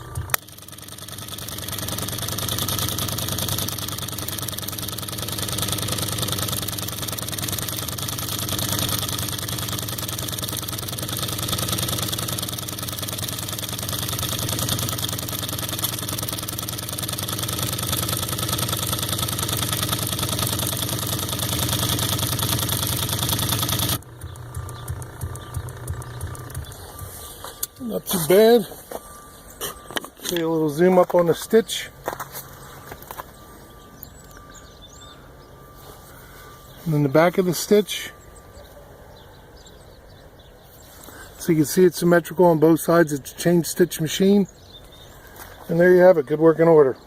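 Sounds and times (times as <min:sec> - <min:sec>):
sewing machine clattering: 0:00.2 - 0:26.8.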